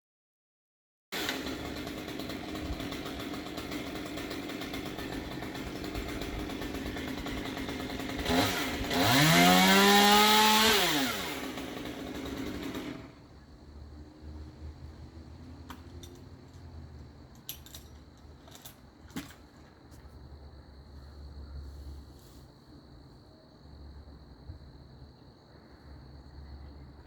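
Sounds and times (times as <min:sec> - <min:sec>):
chainsaw engine idling and revving: 0:01.2 - 0:13.2.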